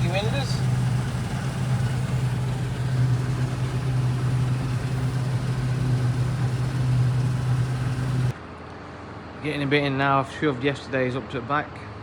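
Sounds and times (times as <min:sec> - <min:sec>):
combine harvester engine drone: 0:00.0 - 0:08.3.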